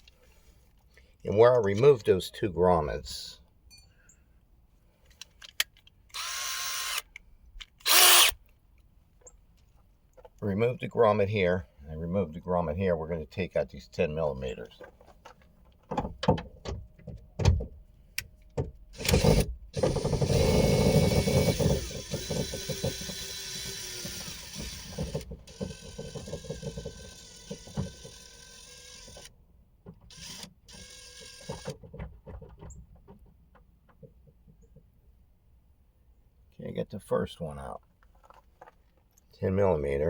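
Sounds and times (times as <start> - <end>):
drill clicks: 5.4 - 8.5, 19.0 - 29.3, 30.1 - 31.8
cordless drill running: 6.1 - 7.1, 7.8 - 8.4, 19.0 - 29.3, 30.1 - 31.7.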